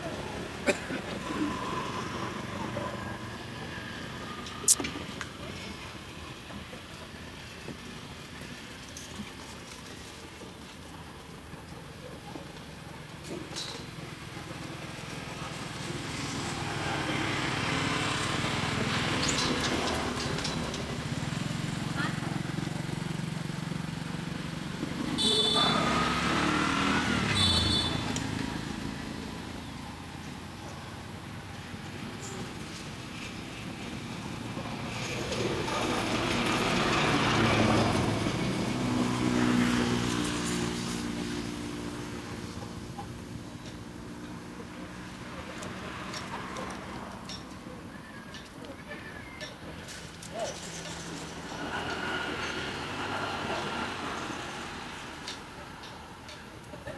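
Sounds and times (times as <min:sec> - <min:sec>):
motor vehicle passing by: 0:00.0 - 0:05.1, 0:13.4 - 0:49.0, 0:49.6 - 0:56.9
small engine running: 0:12.8 - 0:47.8.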